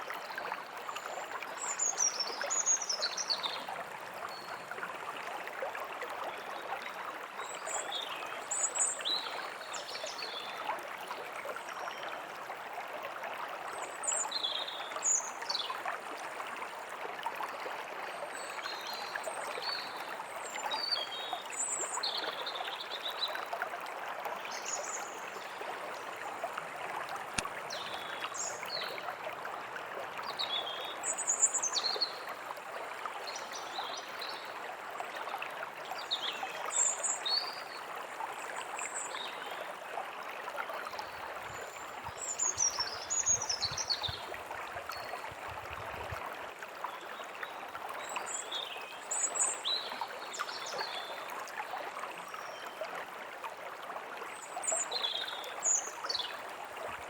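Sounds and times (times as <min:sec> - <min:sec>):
stream running: 0:00.0 - 0:57.0.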